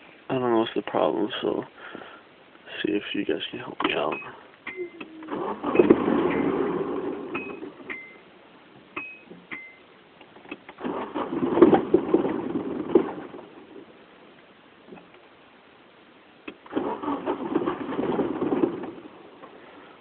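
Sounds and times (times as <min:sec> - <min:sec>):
car engine cranking: 0:03.9 - 0:08.2, 0:10.4 - 0:13.8, 0:16.5 - 0:19.6
short high beeps: 0:04.1 - 0:05.9.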